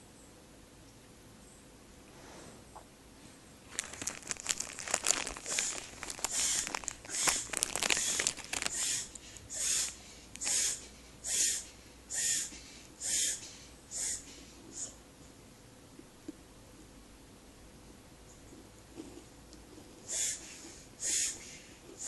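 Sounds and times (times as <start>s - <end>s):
crackling and rustling: 3.6s - 10.5s
animal wheezing coughs: 8.8s - 14.9s, 20.1s - 21.5s.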